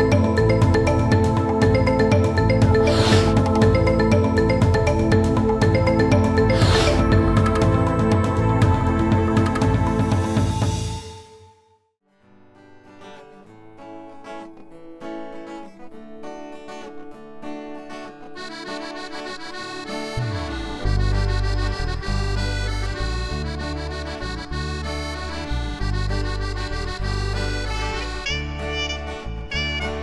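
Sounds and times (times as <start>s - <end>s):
heavy bass line: 0.0s - 11.0s, 20.2s - 28.7s
instrumental music: 0.0s - 11.5s, 17.6s - 30.0s.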